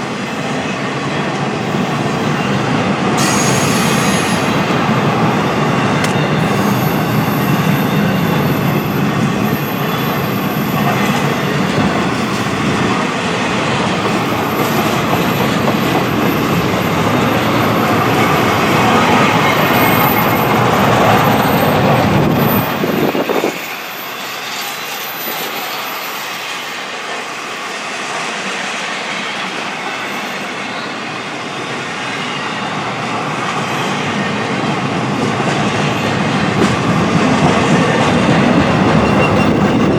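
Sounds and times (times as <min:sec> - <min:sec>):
train wheels clattering on rails: 0:00.0 - 0:39.9
high-pitched squeal: 0:01.7 - 0:13.0, 0:13.9 - 0:34.5.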